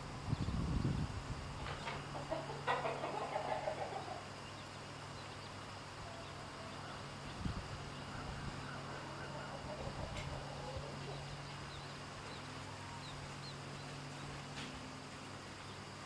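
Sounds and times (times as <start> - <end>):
steady low hum: 0.0 - 16.0
chickens clucking: 1.5 - 14.8.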